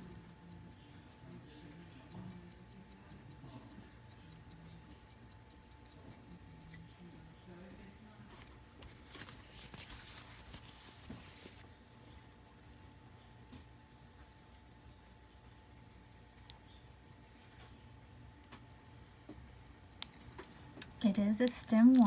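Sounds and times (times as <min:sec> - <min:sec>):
pocket watch ticking: 0:00.0 - 0:22.0
handling rustle: 0:08.8 - 0:11.6.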